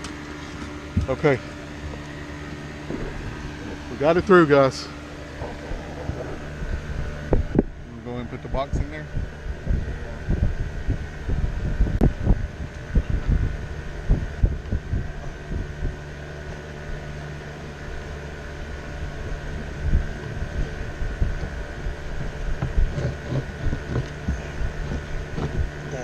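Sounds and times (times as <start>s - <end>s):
electric fan humming: 0.0s - 26.0s
low knocks and bumps: 1.8s - 4.3s.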